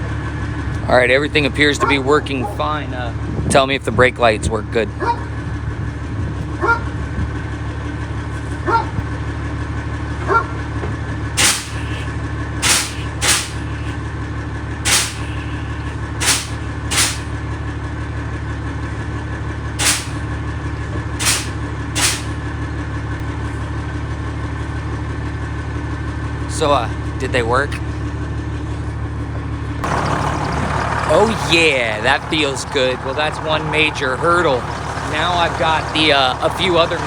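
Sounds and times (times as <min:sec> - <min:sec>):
bus engine idling: 0:07.4 - 0:18.5, 0:19.1 - 0:20.6, 0:28.0 - 0:37.0
air brake hiss: 0:11.4 - 0:13.9, 0:14.9 - 0:17.3, 0:19.8 - 0:20.2, 0:21.2 - 0:22.4.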